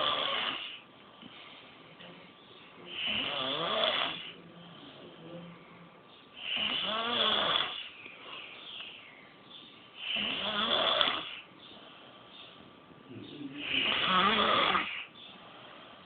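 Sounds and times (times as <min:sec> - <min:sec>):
person snoring: 0:02.9 - 0:04.4, 0:13.6 - 0:15.1.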